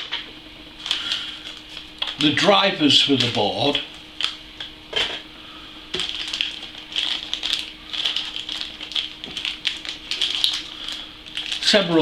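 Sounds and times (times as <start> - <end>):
faint steady hum: 0.0 - 12.0
packaging rustling and clicking: 5.9 - 12.0.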